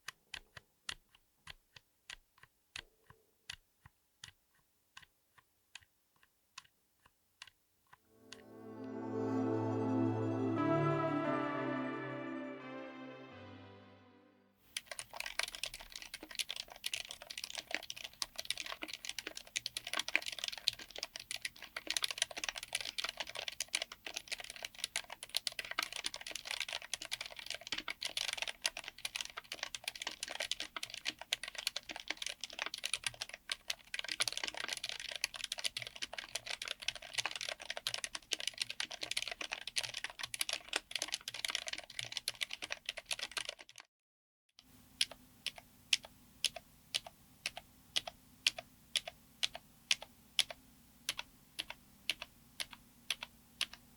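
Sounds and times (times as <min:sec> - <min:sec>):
fast mechanical keyboard typing: 0:14.7 - 0:43.8, 0:45.0 - 0:53.8.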